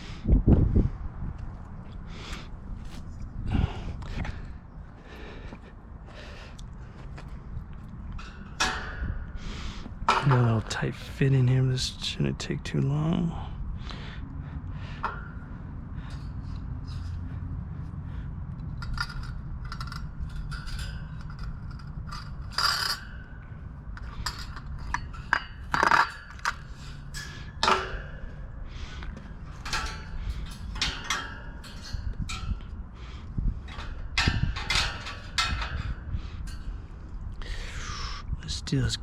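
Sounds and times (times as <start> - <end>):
low background rumble: 0.0 - 39.0
metallic wire clicks and scrapes: 6.5 - 12.2, 14.9 - 37.7.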